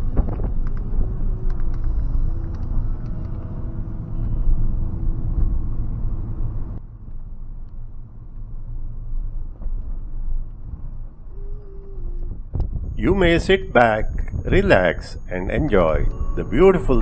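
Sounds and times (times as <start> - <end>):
car engine and road rumble: 0.0 - 11.4.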